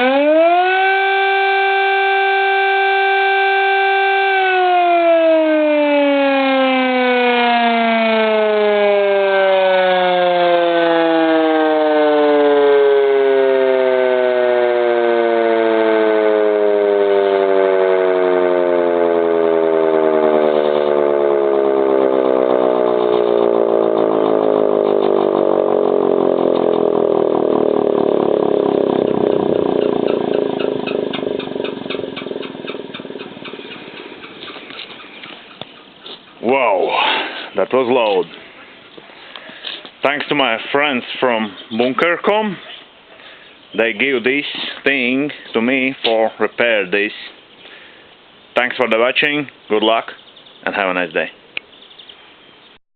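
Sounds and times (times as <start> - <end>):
air-raid siren winding down: 0.0 - 47.0.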